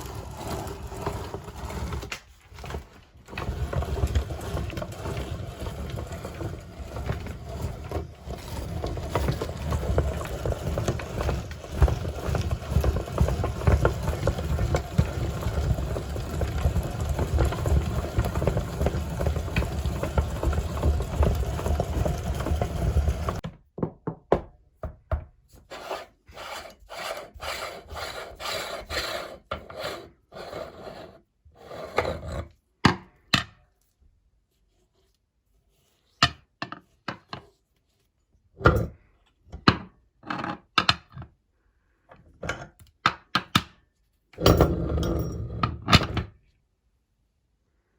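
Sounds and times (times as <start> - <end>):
meat grinder rasping: 0.0 - 23.4.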